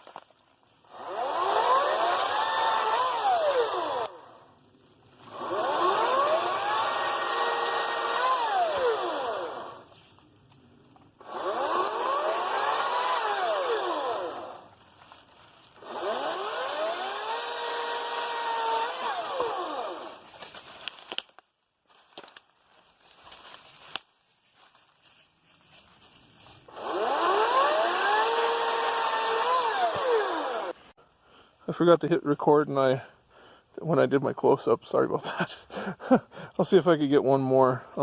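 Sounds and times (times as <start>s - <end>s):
battery chainsaw motor whine: 0.8s - 4.5s, 5.2s - 10.0s, 11.2s - 14.7s, 15.8s - 20.3s, 26.7s - 30.9s.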